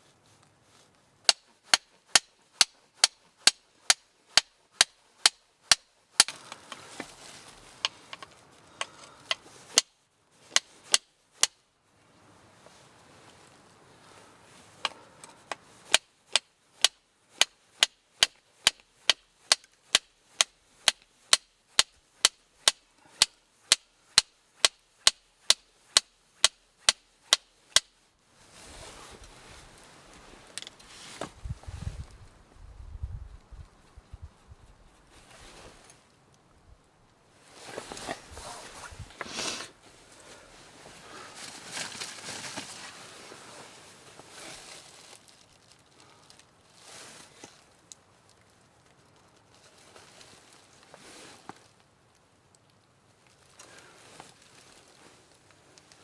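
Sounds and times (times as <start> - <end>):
wood being chopped: 1.2 - 7.1, 15.9 - 27.9.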